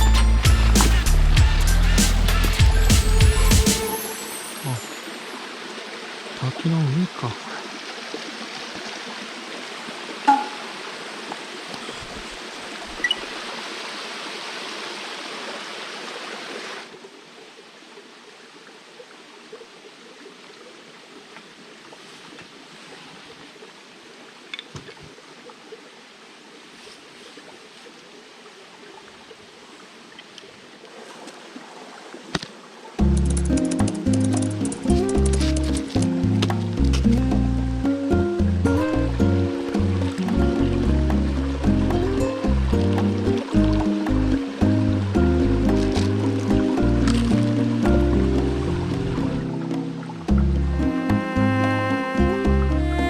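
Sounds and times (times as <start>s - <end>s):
music: 0.0s - 5.0s, 33.0s - 53.0s
stream water over rocks: 0.0s - 53.0s.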